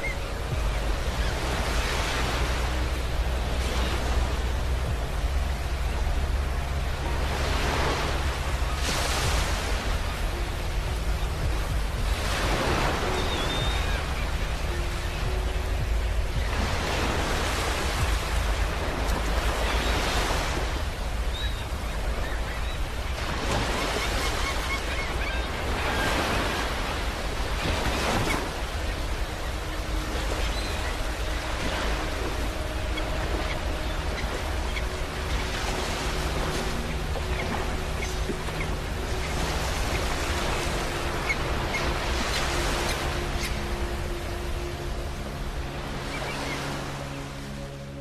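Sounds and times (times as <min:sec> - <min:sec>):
sea waves breaking on beach: 0:00.0 - 0:48.0.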